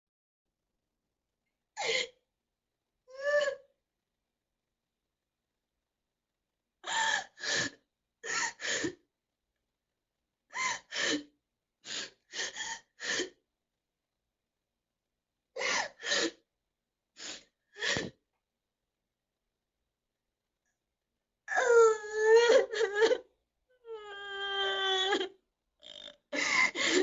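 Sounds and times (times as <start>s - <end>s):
girl crying with gasping sobs: 6.8s - 9.0s, 21.5s - 27.0s.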